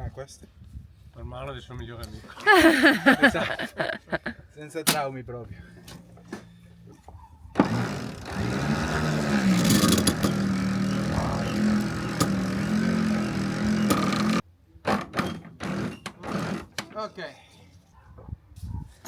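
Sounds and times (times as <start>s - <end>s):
electric winch motor running: 7.7s - 14.4s.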